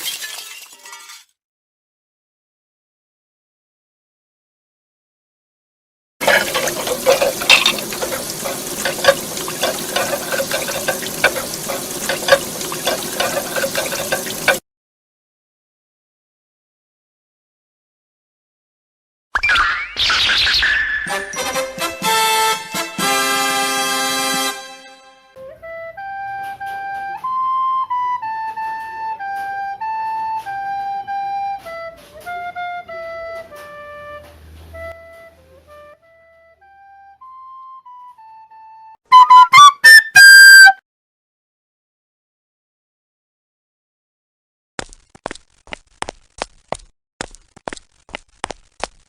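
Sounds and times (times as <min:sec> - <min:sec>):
dishes clinking: 0:06.2 - 0:14.6
water running: 0:06.2 - 0:14.6
recorder playing slow tune: 0:39.1 - 0:40.4.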